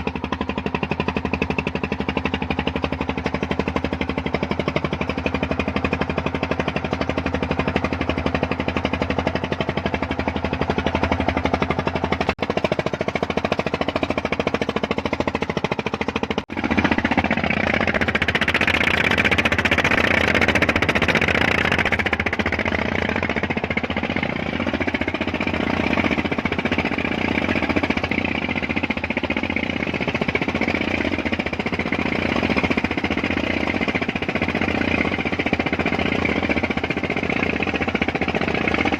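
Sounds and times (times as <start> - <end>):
engine running steadily: 0.0 - 38.9.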